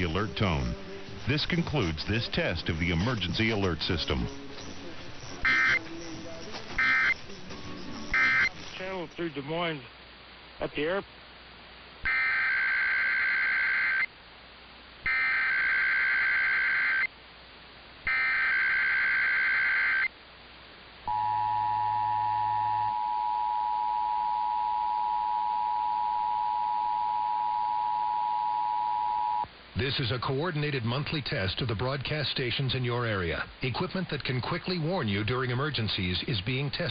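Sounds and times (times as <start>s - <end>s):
warbling digital data bursts: 0.0s - 9.8s
steady two-tone attention signal: 3.0s - 9.3s, 21.1s - 29.5s.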